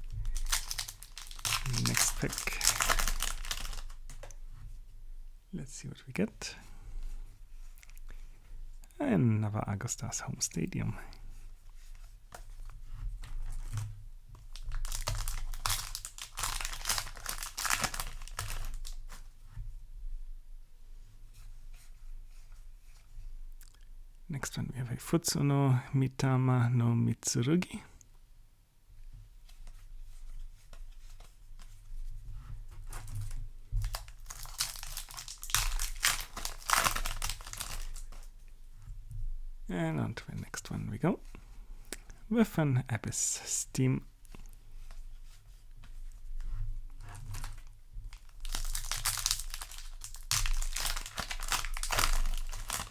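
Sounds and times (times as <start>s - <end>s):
foil pack crinkling: 0.0s - 4.2s, 14.5s - 19.2s, 32.9s - 38.3s, 47.2s - 52.9s
cards ticking while handled: 0.2s - 4.2s.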